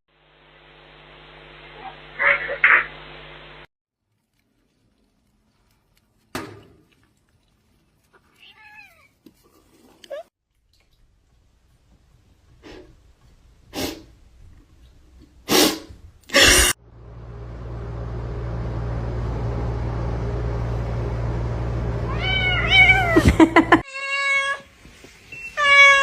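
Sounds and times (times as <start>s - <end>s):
cat meowing: 8.3s - 9.2s, 22.1s - 23.2s, 23.9s - 24.7s, 25.6s - 26.0s
low hum: 16.8s - 23.8s.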